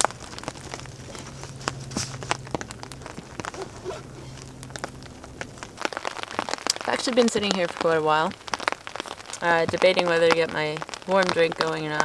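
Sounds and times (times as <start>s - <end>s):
faint low hum: 0.0s - 5.8s
rain drips tapping on a tarp: 0.0s - 12.0s.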